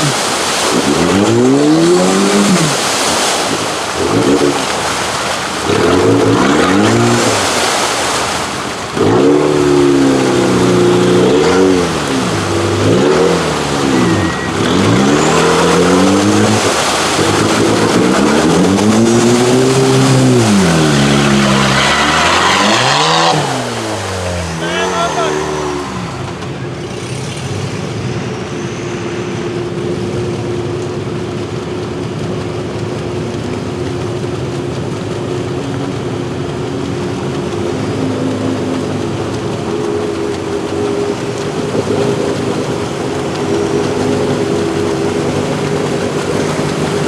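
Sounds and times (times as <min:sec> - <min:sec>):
engine revving hard: 0:05.6 - 0:08.0, 0:09.0 - 0:27.9.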